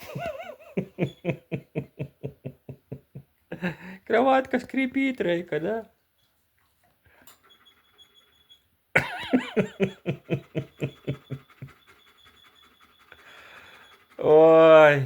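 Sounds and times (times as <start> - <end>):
dog squeaky breathing: 7.2 - 8.8, 10.6 - 14.4.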